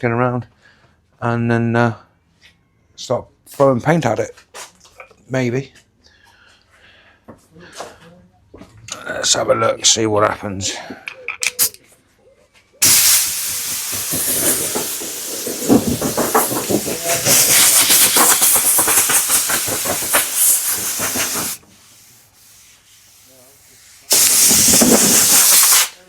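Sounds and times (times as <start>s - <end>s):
air blow gun hissing: 12.8s - 22.0s, 23.7s - 26.0s.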